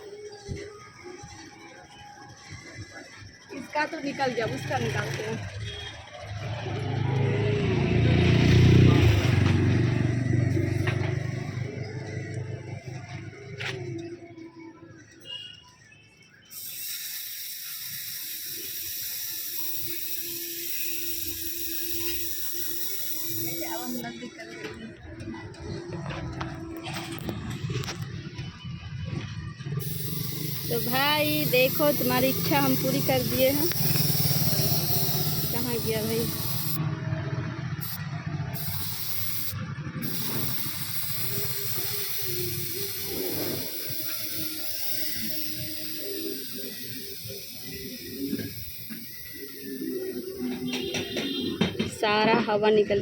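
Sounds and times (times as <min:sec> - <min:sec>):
air hissing out of a tyre: 0:16.5 - 0:24.0, 0:29.7 - 0:36.8, 0:37.7 - 0:52.0.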